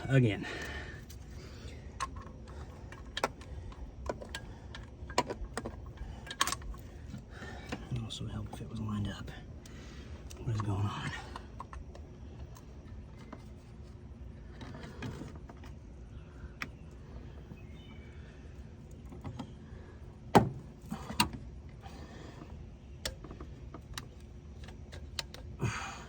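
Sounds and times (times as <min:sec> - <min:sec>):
clicks and clinks of metal parts: 0:02.0 - 0:08.6, 0:22.4 - 0:25.6.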